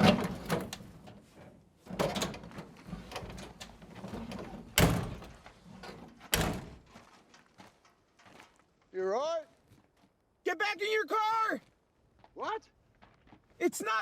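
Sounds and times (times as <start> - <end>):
car doors slamming: 4.7 - 5.3, 6.3 - 6.8.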